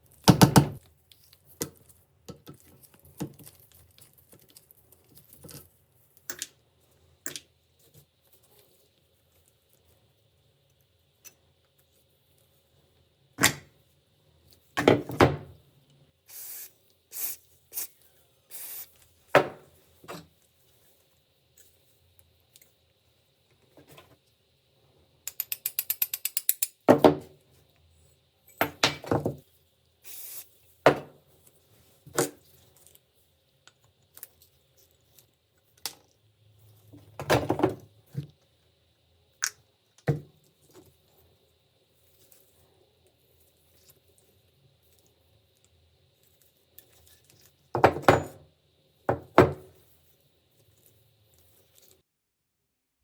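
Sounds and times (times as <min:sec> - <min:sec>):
metal tools clicking and knocking: 0:25.3 - 0:26.8.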